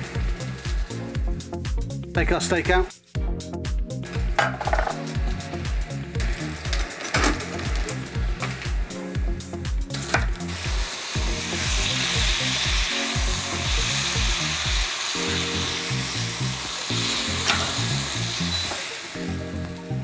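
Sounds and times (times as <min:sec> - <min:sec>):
steak sizzling in a pan: 0:00.0 - 0:02.0, 0:04.1 - 0:20.0.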